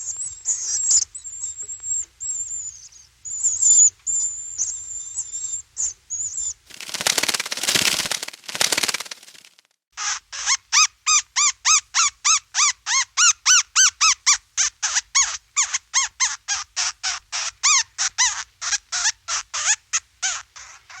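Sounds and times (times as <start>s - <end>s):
bat chirps: 0.0s - 9.2s, 10.0s - 21.0s.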